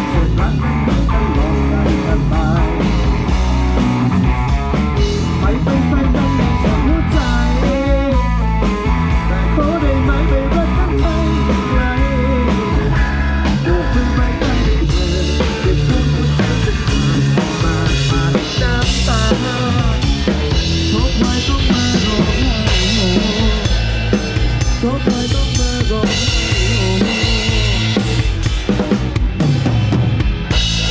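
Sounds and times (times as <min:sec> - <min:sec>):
amplified rock band playing: 0:00.0 - 0:30.9
bass: 0:00.0 - 0:30.9
drum kit: 0:00.0 - 0:30.9.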